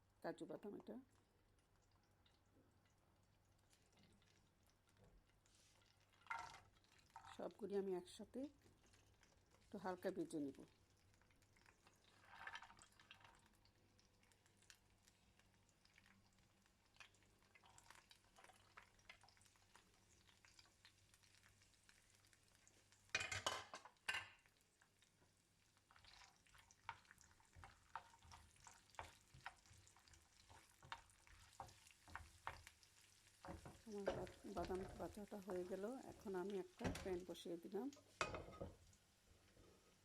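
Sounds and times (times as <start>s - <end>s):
spatula scraping pan: 33.4s - 35.2s.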